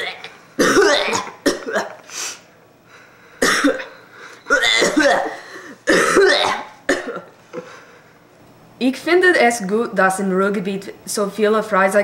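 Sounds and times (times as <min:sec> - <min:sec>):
person coughing hard: 0:00.0 - 0:02.1, 0:03.4 - 0:07.3.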